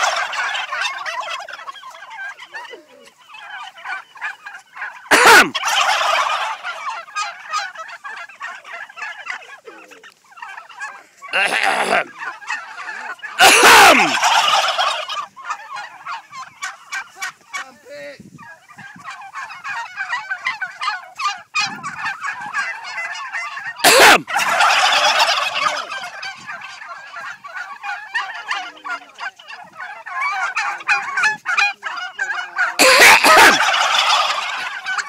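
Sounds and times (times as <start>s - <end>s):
turkeys gobbling: 0.0s - 35.0s
person coughing: 5.1s - 5.5s, 13.4s - 14.1s, 23.8s - 24.2s, 32.8s - 33.6s.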